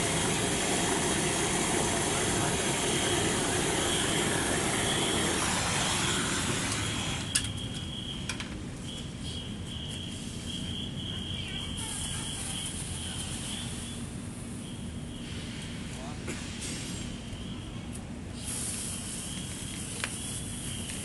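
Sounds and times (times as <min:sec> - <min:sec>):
torch flame hissing: 0:00.0 - 0:07.4, 0:18.3 - 0:21.0
cricket chirping: 0:06.1 - 0:15.6, 0:17.1 - 0:17.8, 0:19.0 - 0:21.0.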